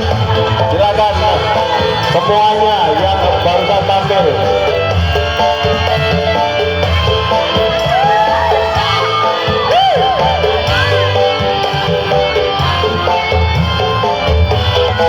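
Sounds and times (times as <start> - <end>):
crowd shouting and whooping: 0.0 - 3.8, 5.0 - 15.0
music playing: 0.0 - 15.0.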